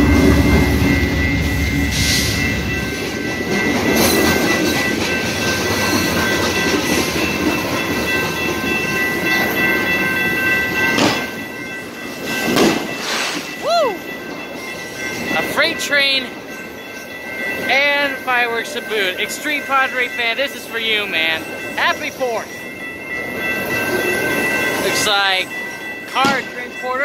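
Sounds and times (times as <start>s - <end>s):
locomotive rumble: 0.0s - 8.7s
high ringing tones: 0.0s - 27.0s
train cars clattering: 0.0s - 27.0s.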